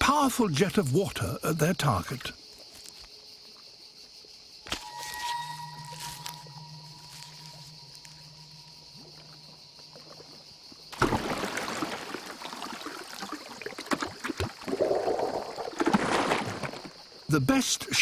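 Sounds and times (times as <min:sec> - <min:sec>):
water splashing and dribbling: 0:06.0 - 0:17.5.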